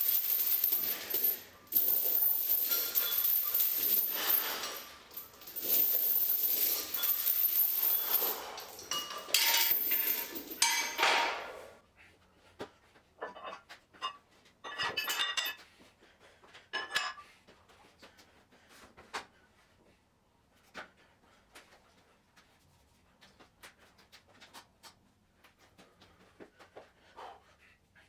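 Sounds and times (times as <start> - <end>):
metal gym weights clanking: 6.7 - 11.5.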